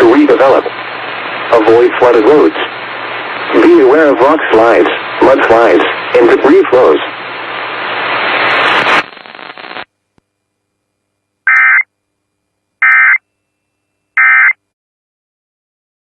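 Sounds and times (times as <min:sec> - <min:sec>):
radio static hiss: 0:00.0 - 0:09.9.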